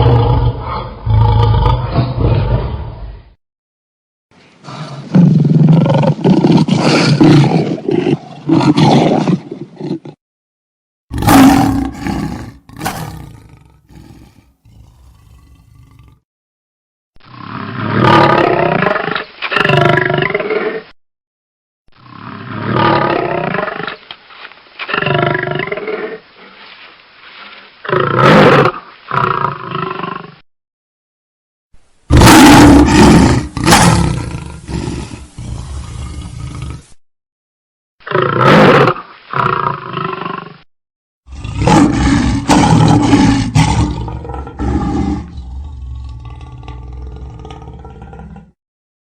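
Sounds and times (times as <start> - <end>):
lions roaring and grunting: 32.1 - 36.8, 41.3 - 48.6.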